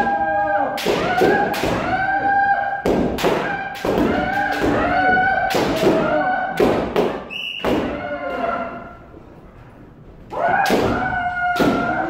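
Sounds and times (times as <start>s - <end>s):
people shouting: 0.0s - 9.2s, 10.3s - 12.0s
bamboo swords striking: 2.8s - 8.0s.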